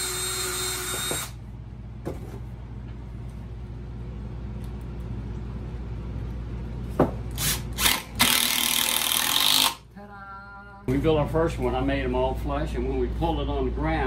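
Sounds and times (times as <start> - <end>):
power drill driving screw into wood: 0.0 - 1.4, 7.3 - 9.8
steady low hum: 0.0 - 14.0.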